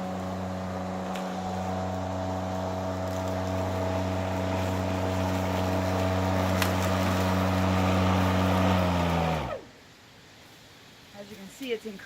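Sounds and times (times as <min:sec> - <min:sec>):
lawnmower running: 0:00.0 - 0:09.6
lawnmower spinning down: 0:00.0 - 0:09.7.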